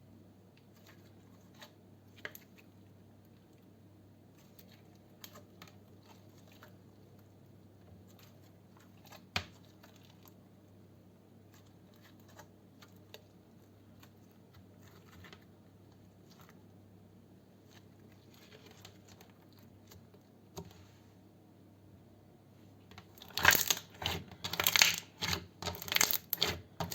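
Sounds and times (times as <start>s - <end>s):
slime clicks and crackles: 23.1s - 26.9s.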